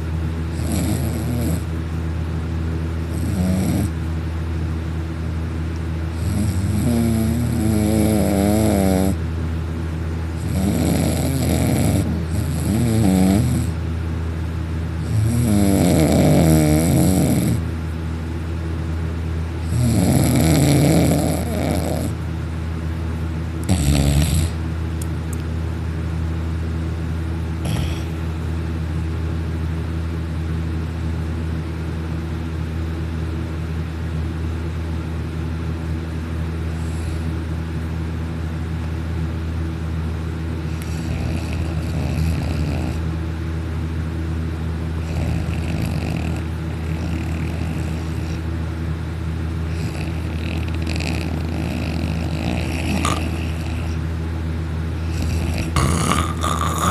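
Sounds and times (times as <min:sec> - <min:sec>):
steady low hum: 0:00.0 - 0:56.9
man snoring loudly: 0:00.5 - 0:01.7, 0:03.1 - 0:04.0, 0:06.1 - 0:09.2, 0:10.4 - 0:13.8, 0:15.0 - 0:17.6, 0:19.6 - 0:22.2, 0:23.6 - 0:24.6, 0:27.6 - 0:28.2, 0:40.7 - 0:43.0, 0:45.0 - 0:48.4, 0:49.7 - 0:54.0, 0:55.0 - 0:56.9.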